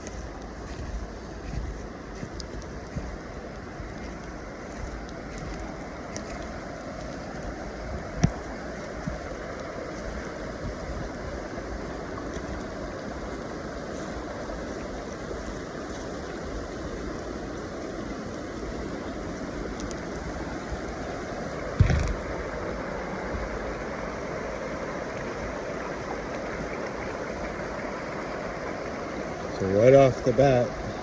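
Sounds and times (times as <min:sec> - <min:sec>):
river water rushing: 0:00.0 - 0:31.0
thump: 0:21.8 - 0:22.2.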